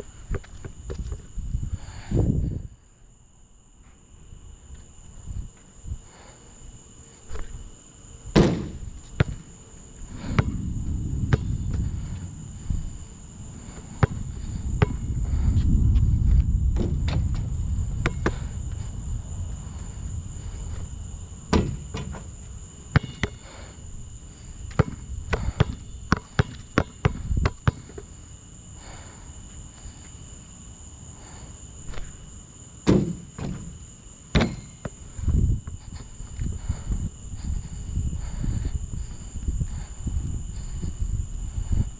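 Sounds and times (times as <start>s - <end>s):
insect drone: 0.0s - 41.9s
basketball bouncing on hard court: 8.4s - 9.5s, 10.3s - 10.6s, 14.0s - 14.2s, 14.8s - 15.1s, 22.9s - 23.4s, 24.7s - 28.0s, 34.4s - 35.0s
low rumble: 10.1s - 22.7s.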